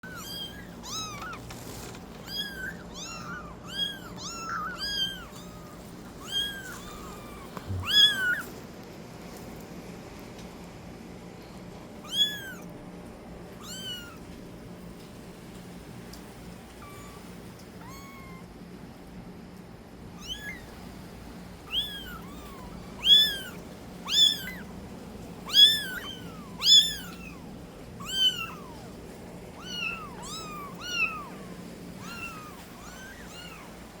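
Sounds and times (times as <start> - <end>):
kitten mewing: 0.0 - 8.5, 12.0 - 12.7, 13.6 - 14.2, 16.8 - 18.5, 20.2 - 20.8, 21.7 - 34.0.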